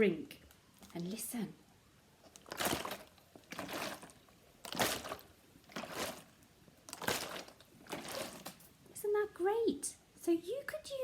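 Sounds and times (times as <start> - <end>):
drink sloshing in a bottle: 2.3 - 8.6.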